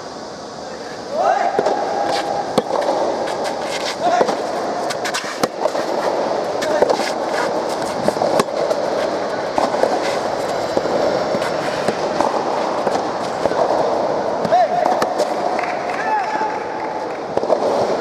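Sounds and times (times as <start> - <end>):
hall and crowd noise: 0.0 - 18.0
rackets hitting tennis ball: 1.4 - 16.2, 16.8 - 18.0.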